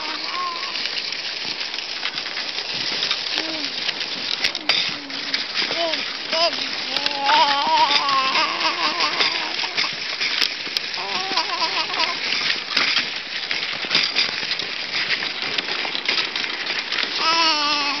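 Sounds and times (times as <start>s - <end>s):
baby making wobbling vocal noises: 0.0s - 0.8s, 3.4s - 3.8s, 4.6s - 9.9s, 11.0s - 12.2s, 17.2s - 18.0s
pram rolling over bumpy snow: 0.0s - 18.0s.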